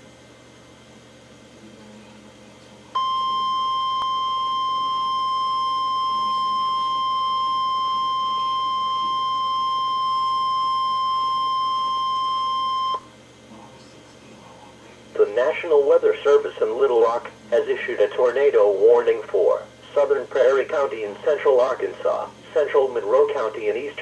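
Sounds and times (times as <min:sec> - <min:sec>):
steady electronic warning tone: 0:03.0 - 0:13.1.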